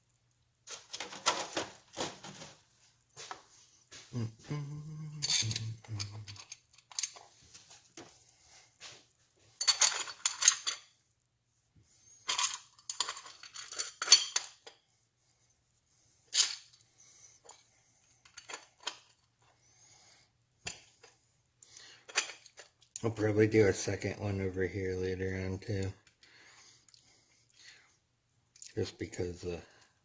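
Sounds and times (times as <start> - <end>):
metal parts clinking and rattling: 5.2 - 7.3, 9.6 - 10.9, 12.2 - 14.7, 16.3 - 16.8, 18.3 - 19.2.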